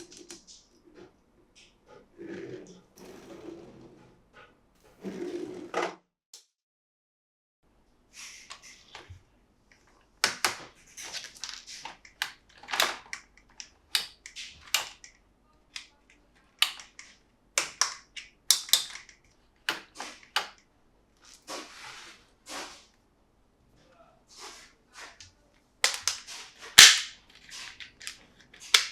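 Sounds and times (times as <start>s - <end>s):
plastic toy parts clicking: 10.2s - 20.6s, 25.8s - 28.9s.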